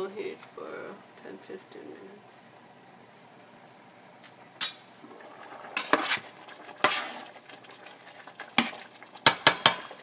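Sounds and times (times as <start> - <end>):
utensil scraping: 5.7 - 7.3
utensils knocking on cookware: 9.2 - 10.0.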